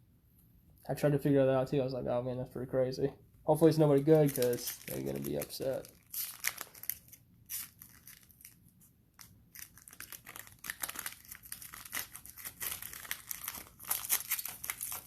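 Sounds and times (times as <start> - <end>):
wrapper tearing and crinkling: 3.8 - 15.0.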